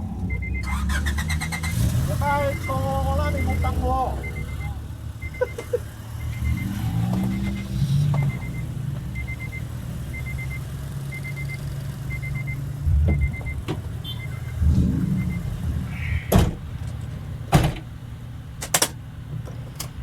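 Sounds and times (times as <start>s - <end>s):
car engine idling: 0.0s - 20.0s
electronic warning chime beeps: 0.3s - 5.6s, 6.2s - 16.2s.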